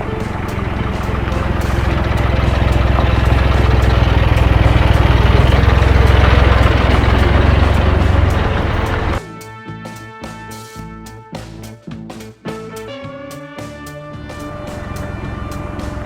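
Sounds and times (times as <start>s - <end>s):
motor humming and rattling: 0.0s - 9.2s.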